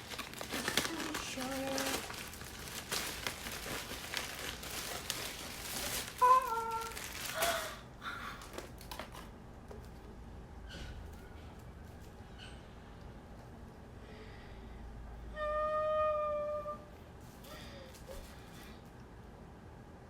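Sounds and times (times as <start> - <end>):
packaging crinkling and rustling: 0.0 - 7.8, 8.4 - 10.0.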